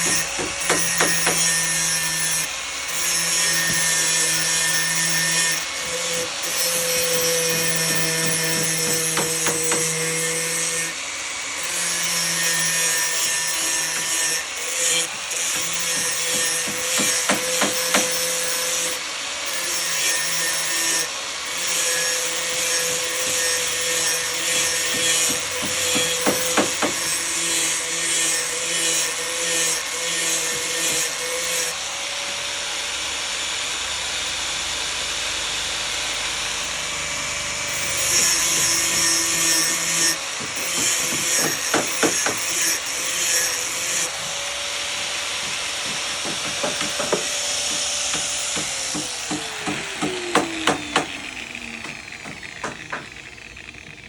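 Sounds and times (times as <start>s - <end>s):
wood being sawn and rubbed: 0.0s - 32.4s, 37.6s - 54.0s
sharp knocks: 45.4s - 51.2s, 51.8s - 53.2s.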